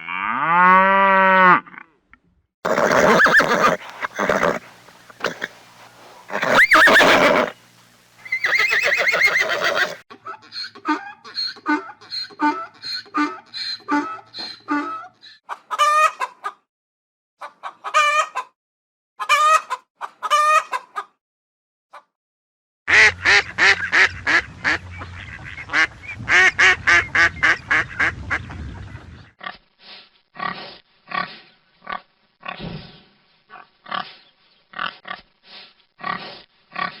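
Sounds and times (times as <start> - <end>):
domestic fowl calling: 2.7 - 10.0
hen clucking: 2.7 - 16.6, 19.2 - 21.1, 22.9 - 28.5.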